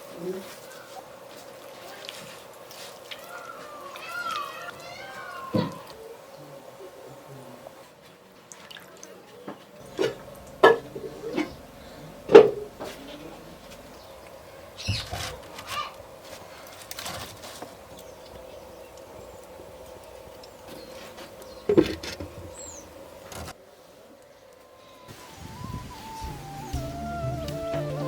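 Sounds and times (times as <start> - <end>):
faint steady hum: 9.8 - 28.0
sharp knocks and clatters: 9.9 - 13.2
high chirp: 25.0 - 28.0.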